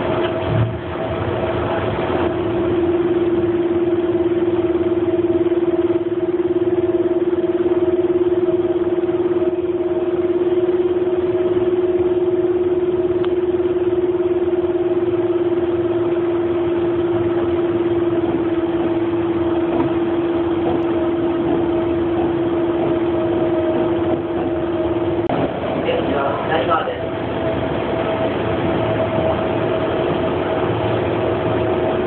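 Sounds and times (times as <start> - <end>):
constant humming tone: 0.0 - 32.0
train car rumble: 18.2 - 32.0.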